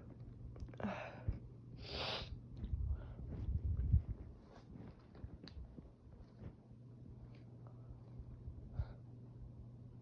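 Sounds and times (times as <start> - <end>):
faint low hum: 0.0 - 10.0.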